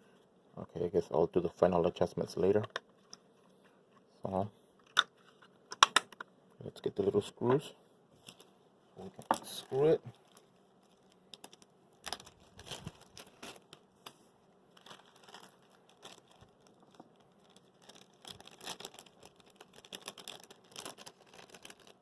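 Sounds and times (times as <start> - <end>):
plastic bag crinkling: 8.2 - 14.1, 14.7 - 22.0.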